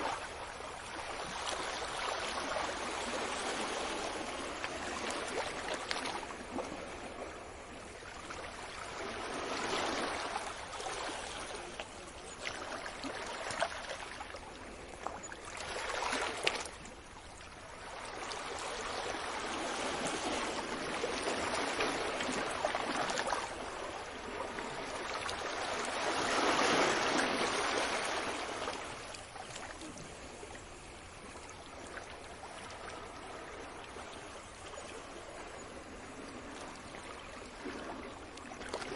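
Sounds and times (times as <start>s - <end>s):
surf breaking on a beach: 18.0s - 31.4s.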